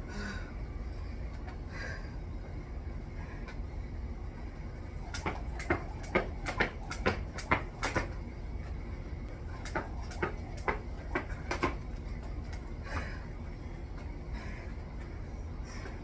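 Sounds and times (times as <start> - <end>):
rope and feet slapping floor: 4.8 - 8.7, 9.3 - 13.1.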